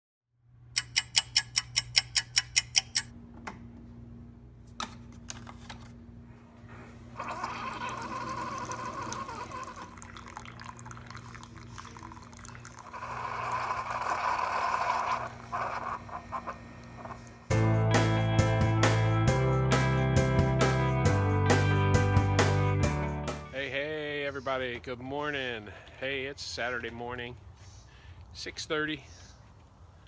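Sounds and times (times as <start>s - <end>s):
running or pouring water: 7.2s - 16.0s
steady low hum: 9.9s - 17.8s.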